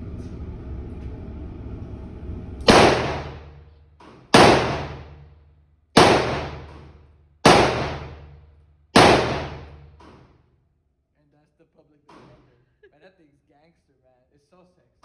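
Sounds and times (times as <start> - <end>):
revolver shots with ringing echo: 2.6 - 3.6, 4.2 - 5.3, 6.0 - 8.4, 9.0 - 10.0.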